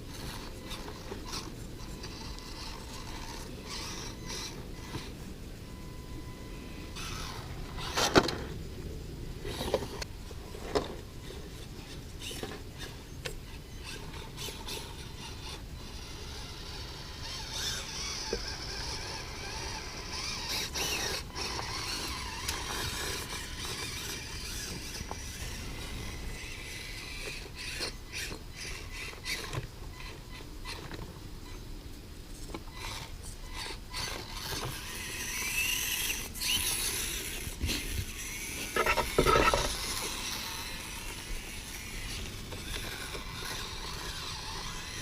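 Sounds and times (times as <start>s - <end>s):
small electric motor whining: 0.0s - 45.0s
toy car knocking on rocks: 38.6s - 40.2s.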